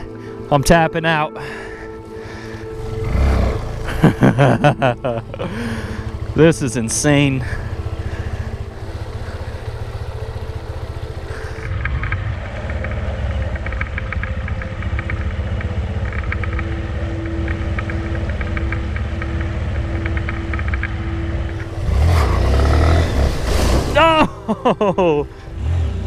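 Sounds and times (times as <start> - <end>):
motorcycle engine running: 1.6 - 26.0.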